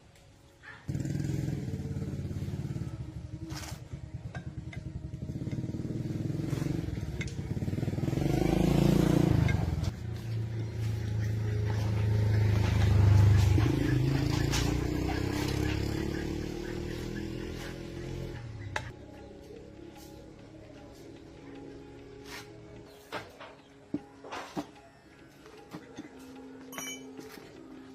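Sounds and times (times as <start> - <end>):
motorbike running: 0.7 - 20.9.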